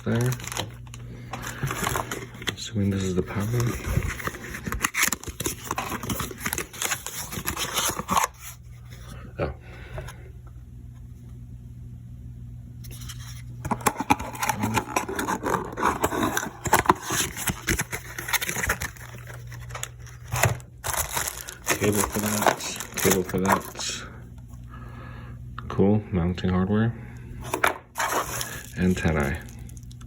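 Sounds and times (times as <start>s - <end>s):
plastic and cardboard rustling: 0.0s - 8.8s, 12.9s - 24.0s, 27.4s - 30.0s
low steady hum: 0.0s - 30.0s.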